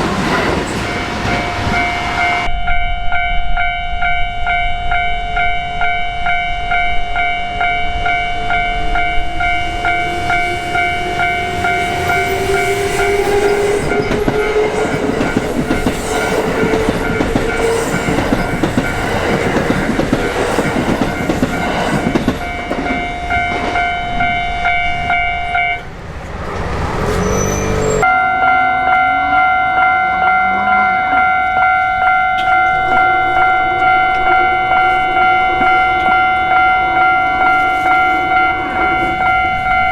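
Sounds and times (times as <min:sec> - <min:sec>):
train rumble and wheel clatter: 0:00.0 - 0:30.3, 0:31.0 - 0:39.9
railroad crossing bell ringing: 0:00.8 - 0:25.9, 0:27.6 - 0:39.9
train motor whine: 0:08.4 - 0:22.2.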